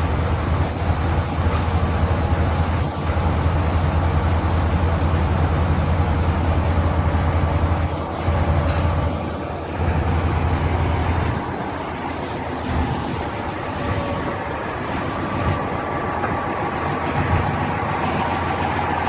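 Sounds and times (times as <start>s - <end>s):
heavy vehicle engine rumble: 0.0s - 19.0s.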